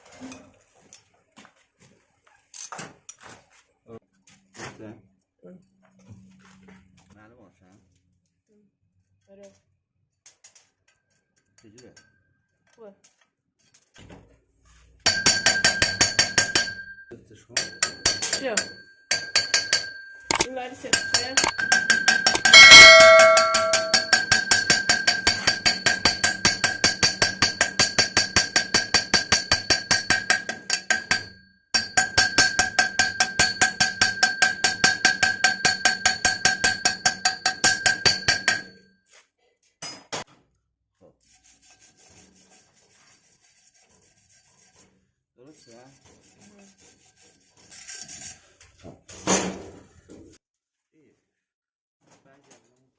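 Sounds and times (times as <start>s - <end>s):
scraping strokes on ringing steel pipe: 17.6s - 31.2s.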